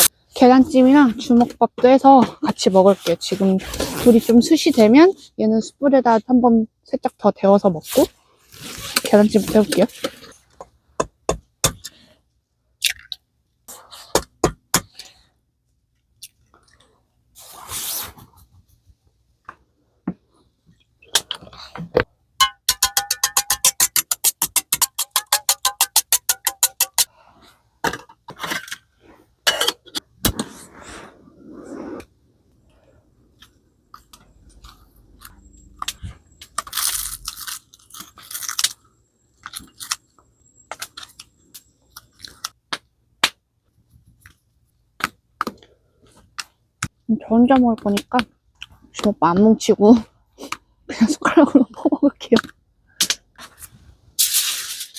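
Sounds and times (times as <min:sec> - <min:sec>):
rustling: 0:07.9 - 0:10.5
eggs beaten in a ringing bowl: 0:22.4 - 0:27.0
utensils and containers clicking: 0:22.4 - 0:27.1.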